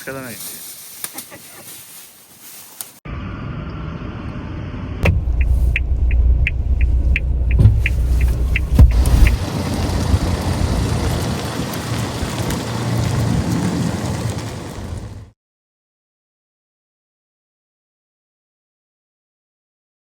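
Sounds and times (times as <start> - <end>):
car engine rumbling: 3.1 - 15.3.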